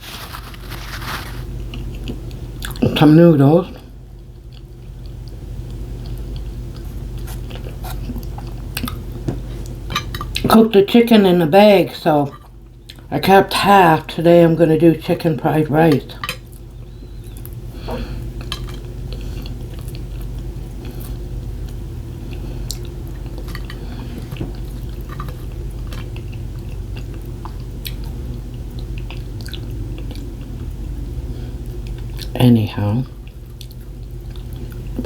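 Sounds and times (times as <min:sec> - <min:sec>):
person chewing: 0:00.0 - 0:02.8, 0:04.4 - 0:10.5, 0:16.5 - 0:30.8, 0:33.2 - 0:35.0
low hum: 0:00.0 - 0:35.0.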